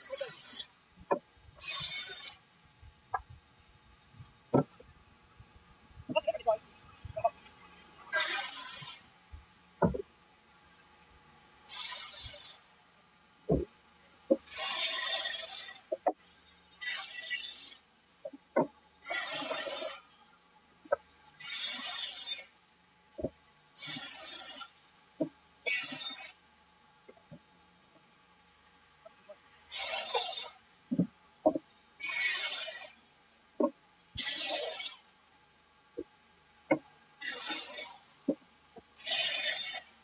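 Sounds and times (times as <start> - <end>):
sharp knocks and clanks: 4.5 - 4.8, 9.8 - 10.1.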